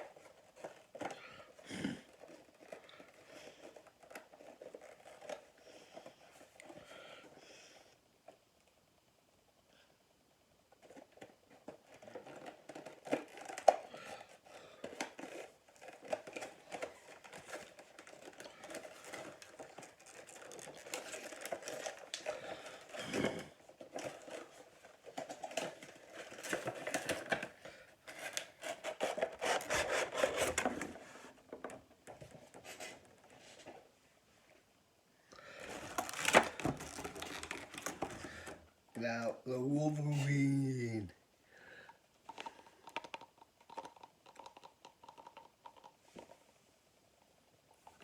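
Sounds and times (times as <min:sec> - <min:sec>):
packaging crinkling and tearing: 0:00.0 - 0:06.2, 0:10.8 - 0:31.2, 0:35.5 - 0:38.6.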